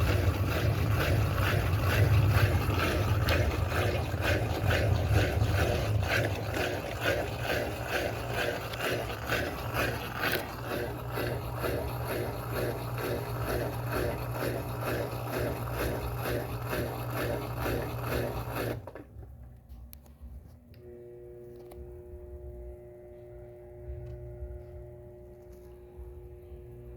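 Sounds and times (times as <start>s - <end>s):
washing machine swishing: 0.0s - 19.0s
washing machine motor hum: 0.0s - 19.5s.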